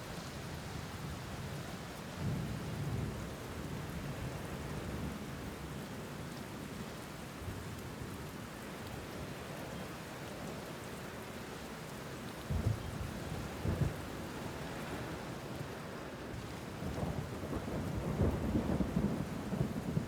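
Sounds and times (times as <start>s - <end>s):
steady rainfall: 0.0s - 20.0s
low rumbling thunder: 16.8s - 20.0s.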